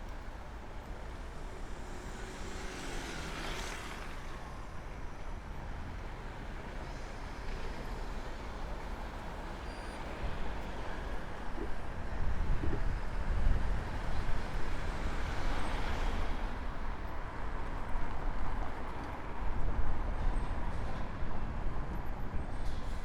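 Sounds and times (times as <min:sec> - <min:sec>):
city traffic hum: 0:00.0 - 0:23.0
vehicle passing close by: 0:01.0 - 0:04.9.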